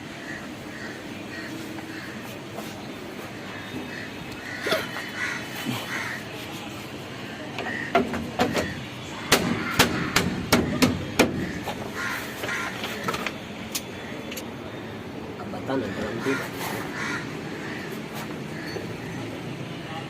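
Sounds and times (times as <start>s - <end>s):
sharp knocks on machine parts: 7.9s - 11.7s.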